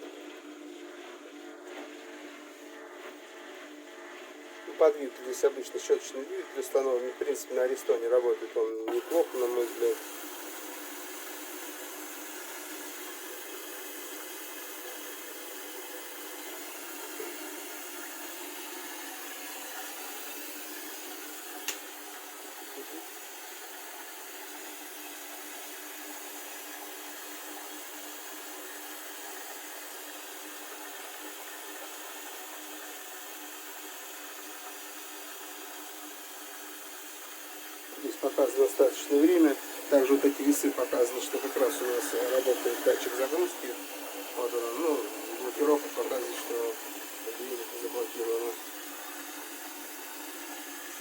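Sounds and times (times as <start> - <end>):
washing machine running: 0.0 - 51.0.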